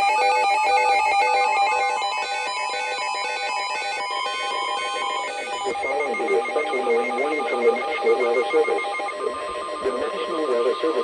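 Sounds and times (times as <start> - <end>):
steady high tone: 0.0 - 11.0
short electronic beeps: 4.6 - 10.1.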